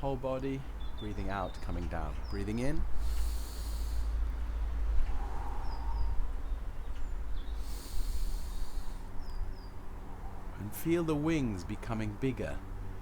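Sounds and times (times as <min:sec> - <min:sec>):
birds chirping: 0:00.0 - 0:09.8
soft rushing hiss: 0:01.9 - 0:09.9
wind rumble on microphone: 0:04.0 - 0:10.6.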